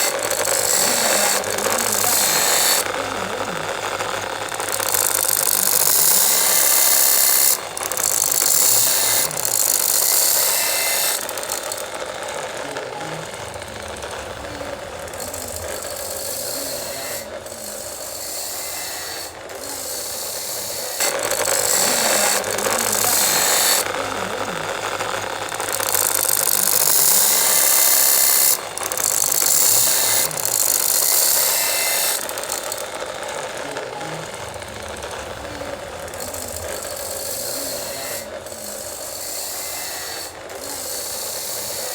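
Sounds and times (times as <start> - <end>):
power tool ratcheting: 0.0 - 41.9.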